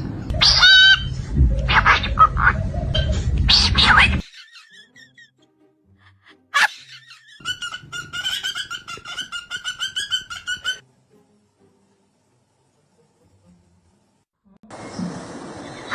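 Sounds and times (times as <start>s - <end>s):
parrot squawking: 0.4s - 1.1s, 1.7s - 5.4s, 6.5s - 10.8s.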